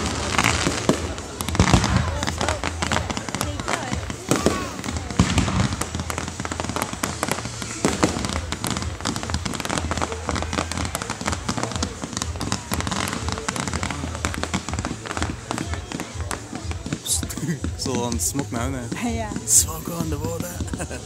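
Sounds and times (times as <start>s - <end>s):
firework bang: 0.0s - 17.0s
fireworks crackling: 0.0s - 21.0s.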